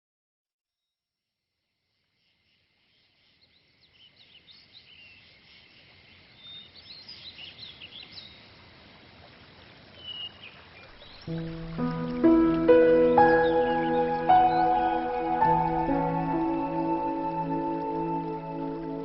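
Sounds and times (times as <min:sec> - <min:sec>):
birds chirping: 0:10.0 - 0:19.0.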